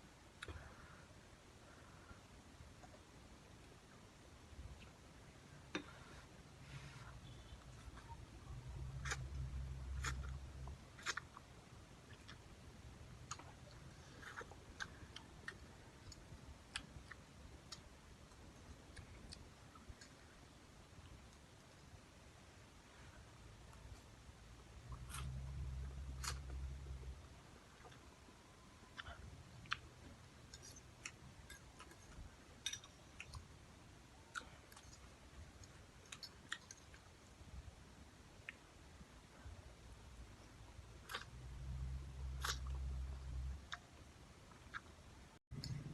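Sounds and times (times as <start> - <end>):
person chewing noodles: 8.8 - 12.4, 13.2 - 20.2, 42.3 - 43.8.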